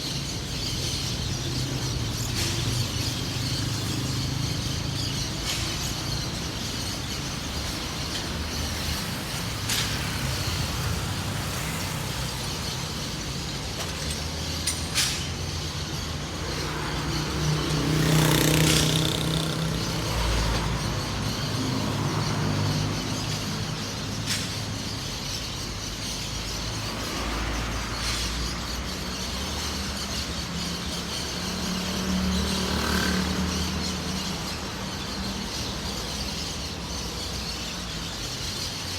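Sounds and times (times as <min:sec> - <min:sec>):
city road traffic: 0:00.0 - 0:38.9
vehicle passing close: 0:16.0 - 0:23.2.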